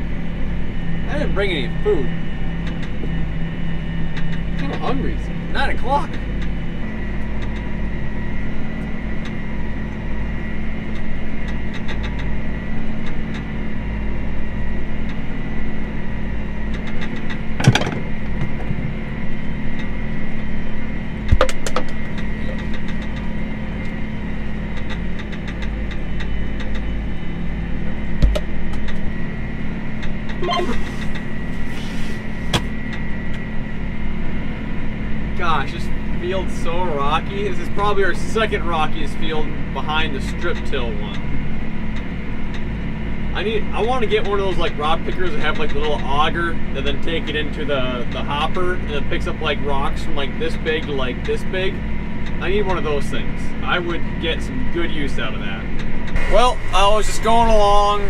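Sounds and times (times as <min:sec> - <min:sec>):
tractor engine running with whine: 0:00.0 - 0:58.0
sharp knocks: 0:17.6 - 0:19.0, 0:28.2 - 0:28.5.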